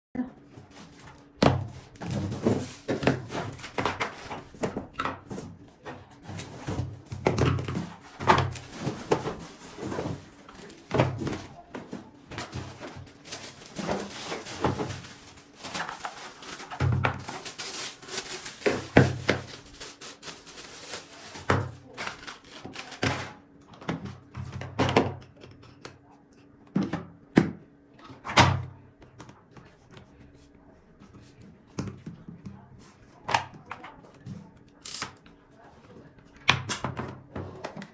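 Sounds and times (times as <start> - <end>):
knocks and thuds of plastic parts: 1.0 - 17.6, 26.7 - 29.3
packaging rustling: 8.4 - 23.0.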